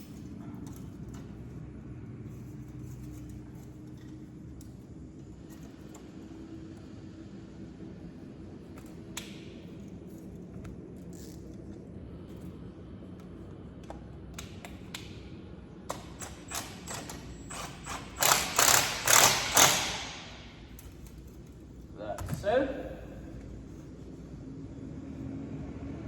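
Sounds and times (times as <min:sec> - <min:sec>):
ratchet wrench clicking: 0:15.9 - 0:21.3.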